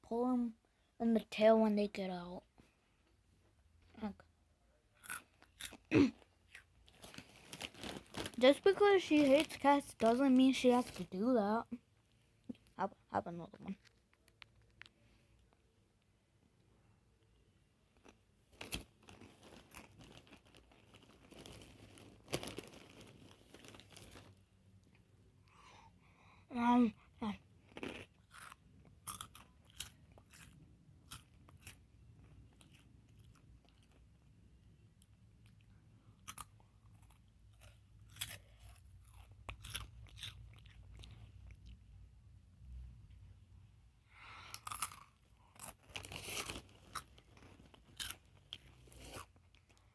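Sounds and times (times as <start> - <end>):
crunchy chewing: 5.0 - 8.2, 27.7 - 31.8, 36.2 - 41.6, 44.5 - 49.8
plastic packaging crinkling: 6.8 - 11.2, 18.0 - 24.4, 45.6 - 49.2.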